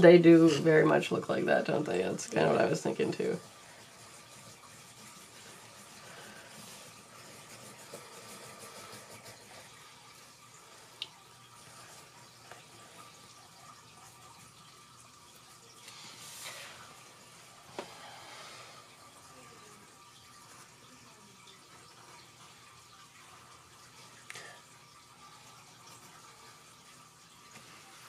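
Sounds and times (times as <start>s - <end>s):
faint steady hiss: 0.0s - 28.0s
pens scratching on paper: 2.3s - 9.7s.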